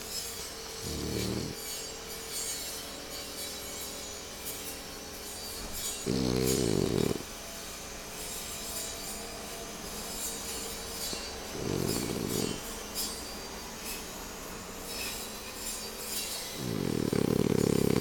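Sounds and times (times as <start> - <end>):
pet snoring: 0.0 - 2.6, 5.4 - 7.3, 10.0 - 13.2, 14.9 - 18.0.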